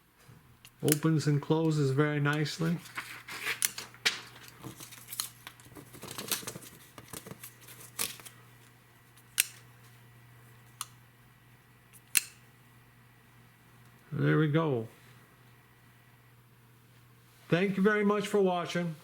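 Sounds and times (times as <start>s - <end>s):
rustling handling noise: 0.2s - 10.1s
knife blade snapping: 12.0s - 12.4s.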